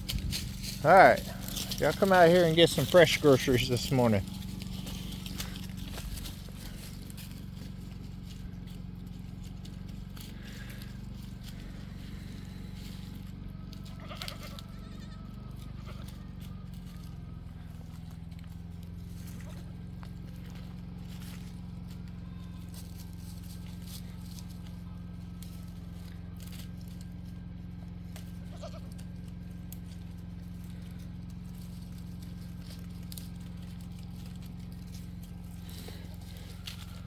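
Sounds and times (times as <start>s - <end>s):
steady low hum: 0.0s - 37.0s
faint goat bleats: 13.7s - 16.4s, 22.0s - 22.9s, 28.2s - 29.2s.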